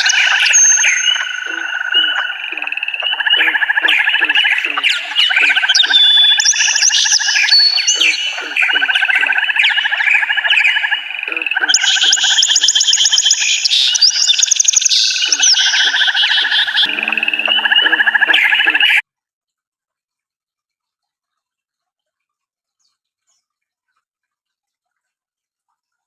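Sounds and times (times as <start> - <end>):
songbirds chirping and trilling: 0.0 - 19.0.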